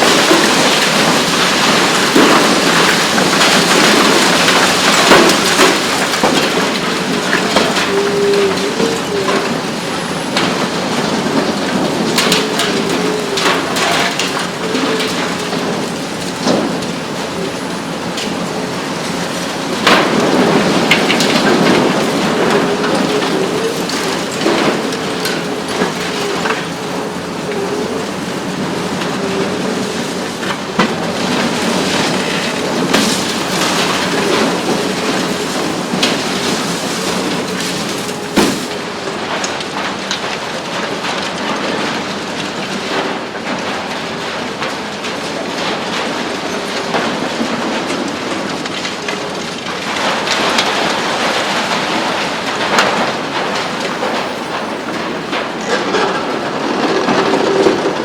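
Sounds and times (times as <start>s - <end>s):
concrete crunching and rubble falling: 0.0s - 39.0s
excavator engine and hydraulics droning: 0.0s - 58.0s.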